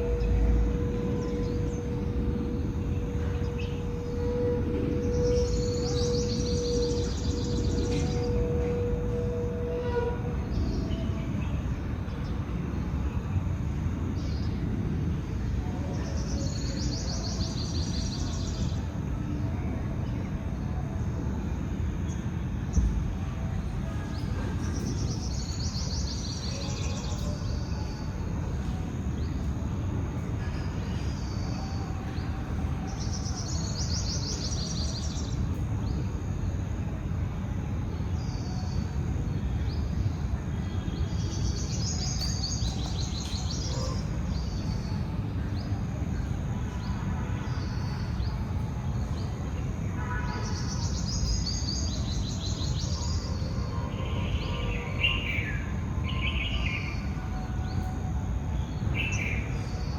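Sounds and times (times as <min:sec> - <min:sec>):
birds chirping: 0:00.0 - 0:12.4.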